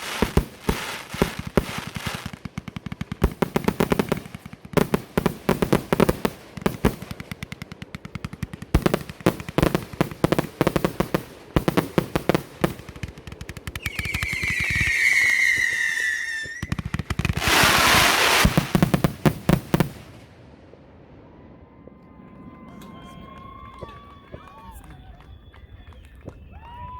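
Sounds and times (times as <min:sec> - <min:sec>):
fireworks crackling pops: 0:00.0 - 0:20.4
whistling firework: 0:00.0 - 0:26.9.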